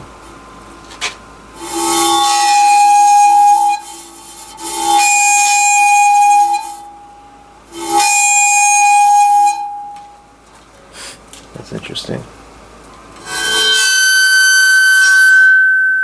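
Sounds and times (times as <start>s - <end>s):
high buzzing tone: 1.5s - 10.4s, 13.2s - 16.0s.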